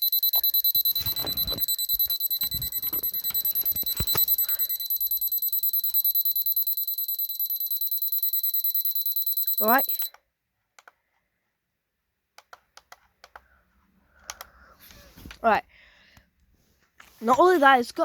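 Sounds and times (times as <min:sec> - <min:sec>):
alarm clock beeping: 0:00.0 - 0:10.2.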